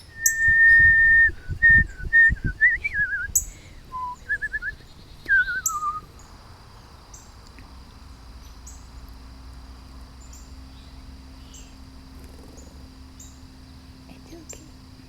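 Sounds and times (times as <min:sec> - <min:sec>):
insects droning: 0:00.0 - 0:15.0
warbling whistled notes: 0:00.1 - 0:03.4.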